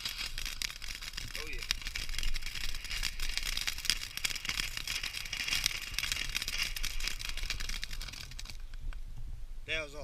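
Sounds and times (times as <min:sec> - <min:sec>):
firework crackling: 0:00.0 - 0:09.1.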